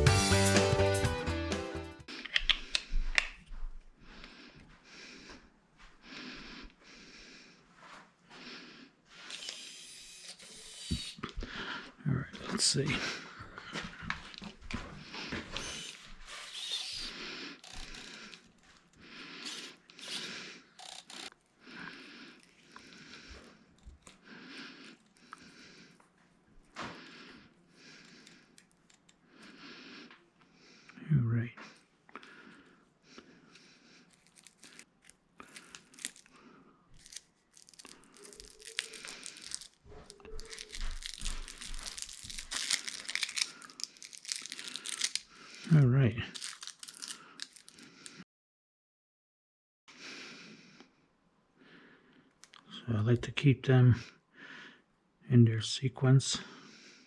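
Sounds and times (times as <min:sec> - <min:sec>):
wires scraping and crinkling: 0:14.1 - 0:26.0, 0:34.0 - 0:36.4, 0:37.0 - 0:48.2.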